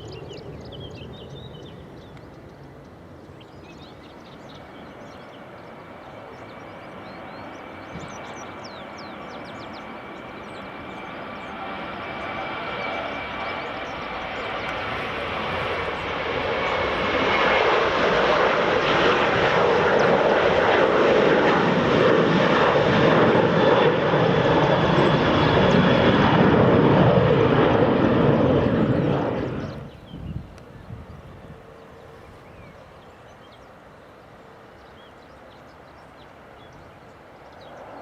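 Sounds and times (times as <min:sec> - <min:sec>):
airliner engines roaring: 0:00.0 - 0:38.0.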